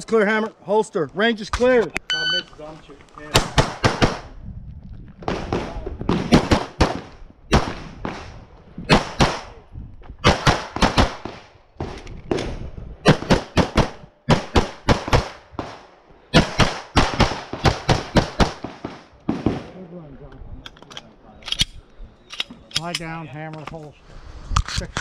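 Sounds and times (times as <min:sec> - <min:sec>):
rapid pistol shots: 0:03.4 - 0:04.3, 0:05.3 - 0:08.3, 0:08.9 - 0:09.6, 0:10.2 - 0:11.5, 0:13.1 - 0:19.7.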